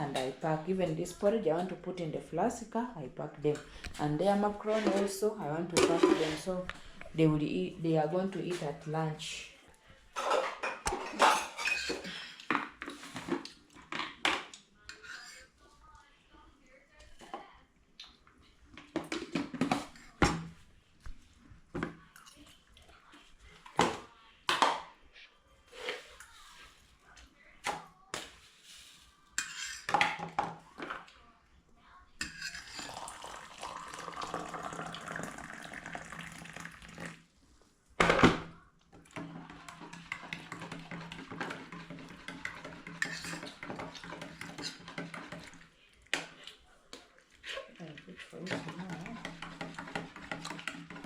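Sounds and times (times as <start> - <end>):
metal pots and utensils clinking: 3.5 - 6.7, 10.1 - 15.4, 29.4 - 31.0, 32.2 - 35.4, 39.0 - 46.4, 47.4 - 51.0.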